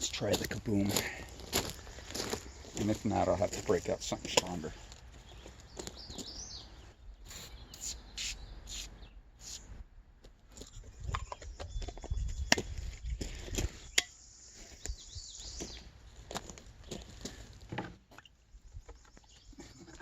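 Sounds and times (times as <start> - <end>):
short hissing strokes: 7.3 - 9.7.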